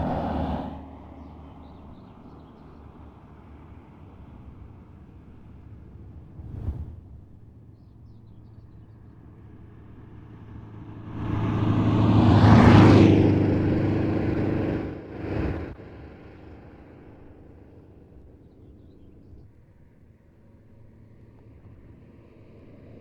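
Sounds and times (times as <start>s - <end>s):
car driving past: 0.0s - 1.3s, 10.4s - 17.7s.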